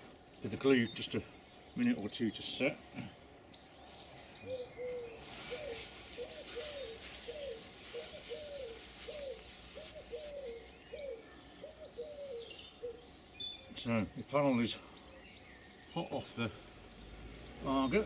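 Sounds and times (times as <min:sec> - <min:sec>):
small birds chirping: 0:00.0 - 0:18.0
pigeon cooing: 0:04.4 - 0:13.0.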